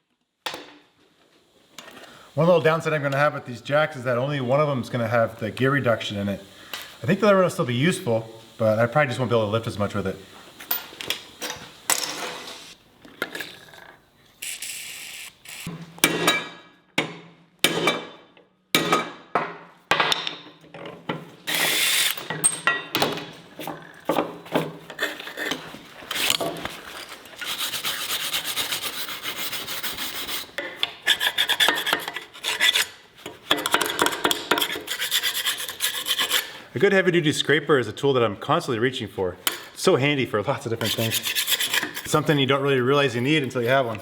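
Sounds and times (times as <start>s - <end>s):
hand scraper rasping on metal: 27.4s - 36.6s, 40.8s - 42.3s.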